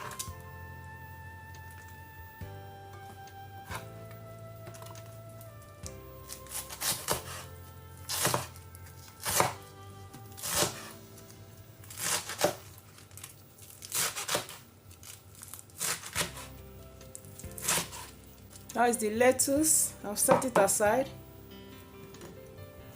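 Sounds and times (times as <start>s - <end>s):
soft background music: 0.0s - 13.2s, 13.9s - 22.9s
knife slicing lettuce: 6.3s - 9.6s, 10.4s - 11.0s, 11.9s - 16.6s, 17.4s - 18.2s.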